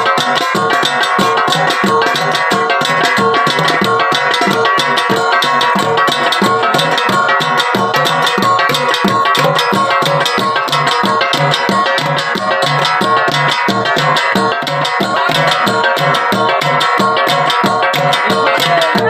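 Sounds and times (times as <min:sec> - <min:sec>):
gongs played in interlocking rhythm: 0:00.0 - 0:19.0.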